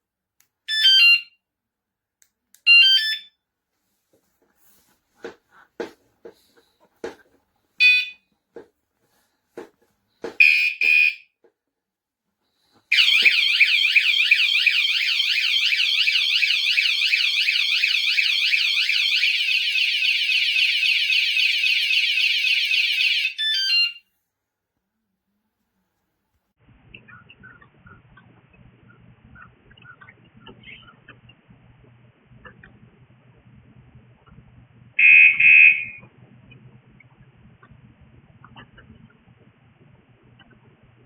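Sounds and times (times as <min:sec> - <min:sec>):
alarm clicks: 0:12.9 - 0:23.7
warbling alarm siren: 0:12.9 - 0:24.0, 0:35.0 - 0:36.1.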